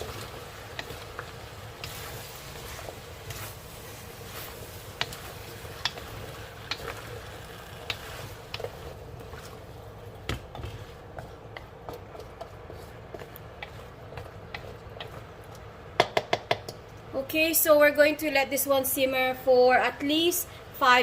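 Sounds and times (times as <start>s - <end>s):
food sizzling in a pan: 0.0s - 11.8s
spatula knocking against pan: 15.9s - 16.8s.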